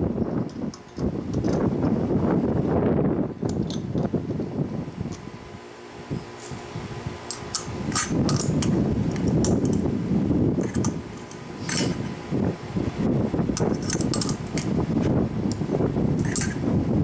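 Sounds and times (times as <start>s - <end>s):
small hard parts clinking: 13.6s - 14.7s, 16.2s - 16.6s.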